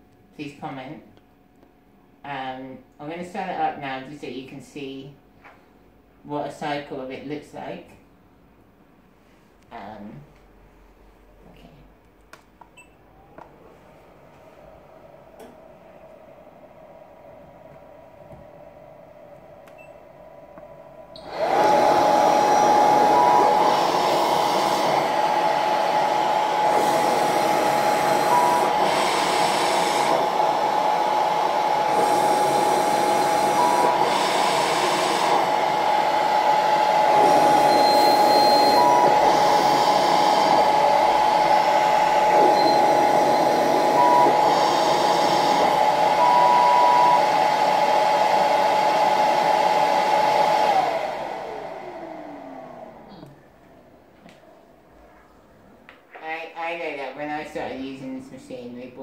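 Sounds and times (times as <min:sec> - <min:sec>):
machine blower with rushing air: 0:20.3 - 0:53.2.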